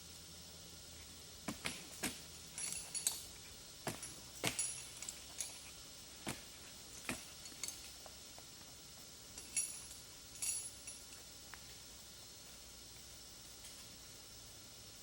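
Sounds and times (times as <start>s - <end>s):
metal gear clinking: 1.7s - 5.8s, 6.9s - 8.1s, 9.3s - 11.3s.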